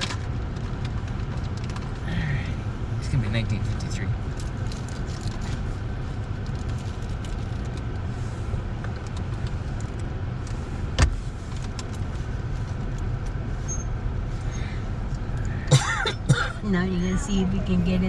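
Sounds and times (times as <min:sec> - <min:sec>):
light ticks and rattles: 0:00.0 - 0:02.0
car engine low rumble: 0:00.0 - 0:18.0.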